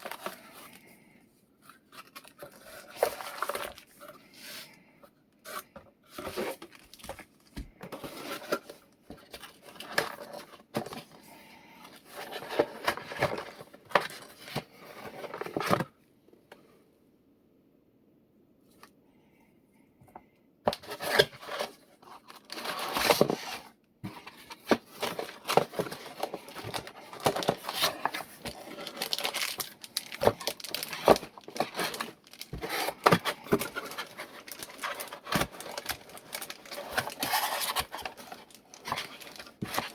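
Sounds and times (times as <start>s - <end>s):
packaging rustling and tearing: 0.0s - 0.9s, 1.7s - 4.7s, 20.7s - 39.9s.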